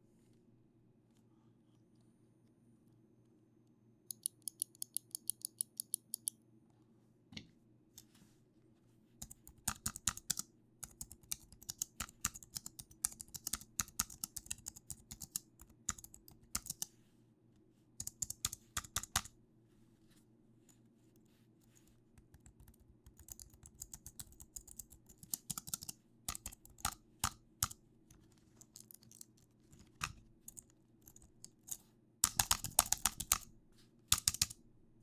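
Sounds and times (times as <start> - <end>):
computer keyboard typing: 4.1 - 6.3, 9.2 - 16.9, 18.0 - 19.3, 22.2 - 27.8, 30.0 - 33.5, 34.1 - 34.6.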